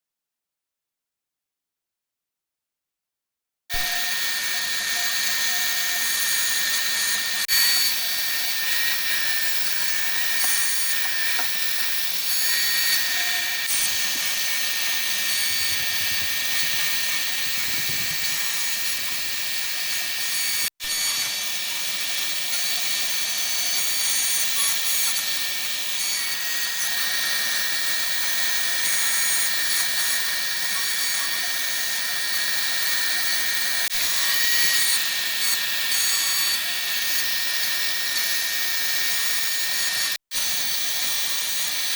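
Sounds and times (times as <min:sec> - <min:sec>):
router cutting wood: 0:03.7 - 0:41.9
router spindle whine: 0:03.7 - 0:41.9.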